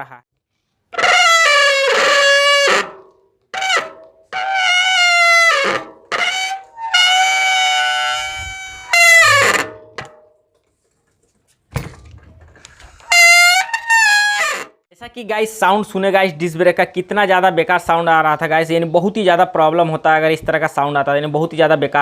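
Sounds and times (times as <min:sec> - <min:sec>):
bicycle disc brake squealing: 0:01.0 - 0:10.1, 0:13.0 - 0:14.7.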